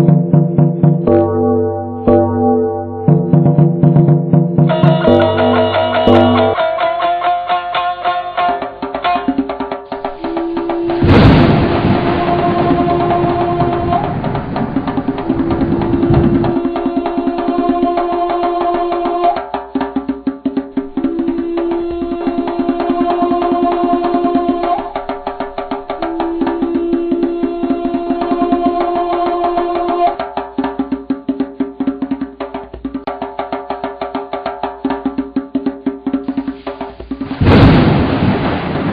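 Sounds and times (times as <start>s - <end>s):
long held musical note: 4.7s - 6.6s
rapid drum strokes: 8.4s - 38.9s.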